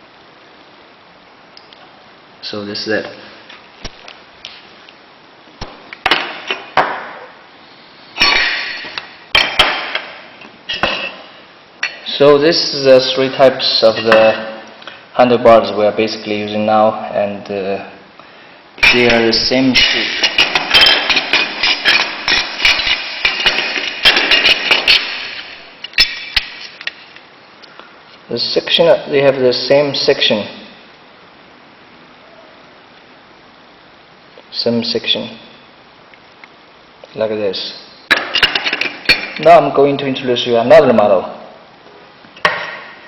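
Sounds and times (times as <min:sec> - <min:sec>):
metal handles clanking: 0:18.8 - 0:27.0.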